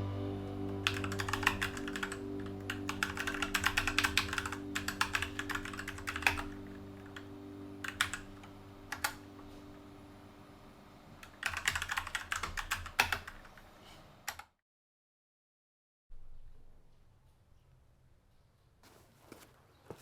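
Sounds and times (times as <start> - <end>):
background music: 0.0 - 10.9
typing on mechanical keyboard: 0.8 - 8.3, 8.9 - 9.2, 11.2 - 13.6.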